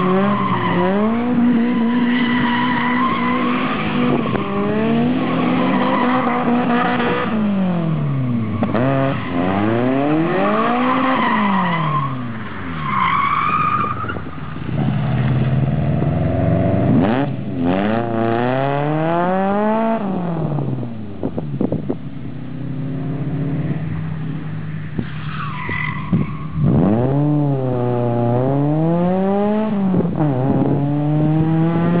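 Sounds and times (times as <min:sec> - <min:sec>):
car engine revving: 0:00.0 - 0:12.4, 0:14.7 - 0:21.4, 0:26.1 - 0:32.0
tires squealing: 0:00.0 - 0:15.6, 0:22.9 - 0:28.2.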